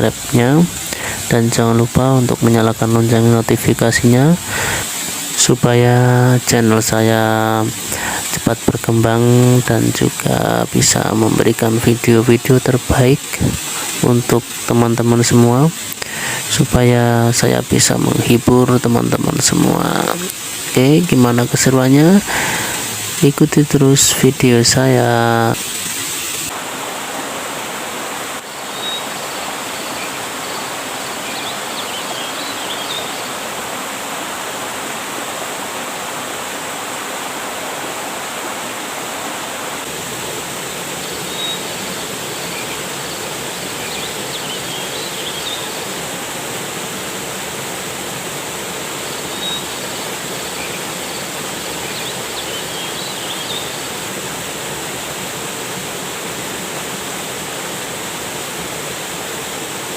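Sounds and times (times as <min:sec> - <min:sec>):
river water rushing: 0:00.0 - 0:59.9.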